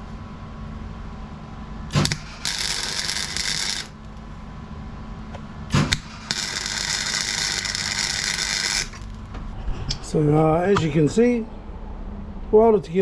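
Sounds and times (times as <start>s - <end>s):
electric welder arcing and crackling: 1.9s - 4.3s, 5.7s - 9.3s.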